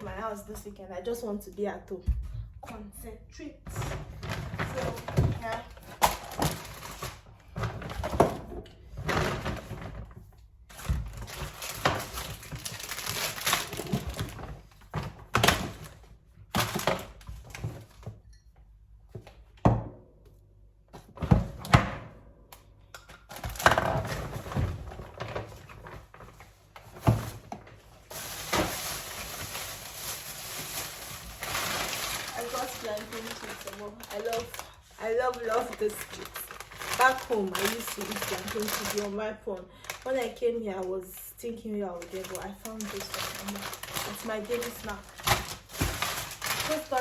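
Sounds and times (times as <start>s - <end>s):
rustling: 25.4s - 39.1s.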